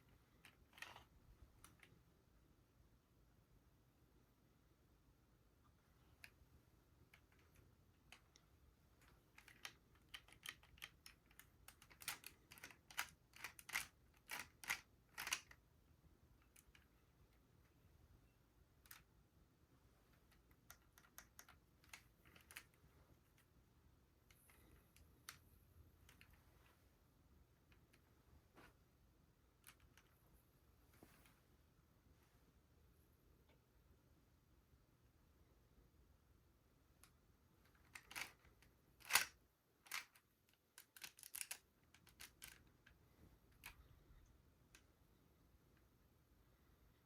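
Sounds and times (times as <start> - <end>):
plastic clicks: 0.3 - 2.0, 7.0 - 15.6, 20.1 - 23.5, 37.0 - 43.9.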